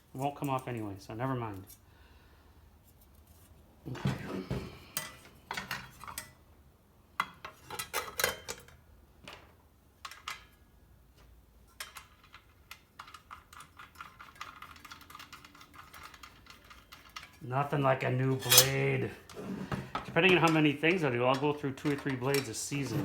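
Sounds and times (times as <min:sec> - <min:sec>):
metal clinks and knocks of tools: 0:18.3 - 0:18.9.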